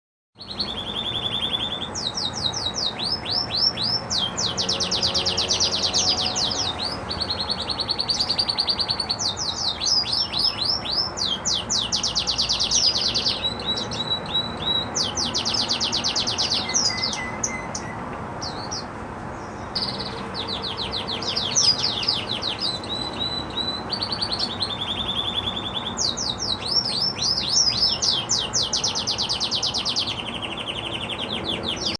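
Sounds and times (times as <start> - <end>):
canary singing trills: 0.4 - 31.9.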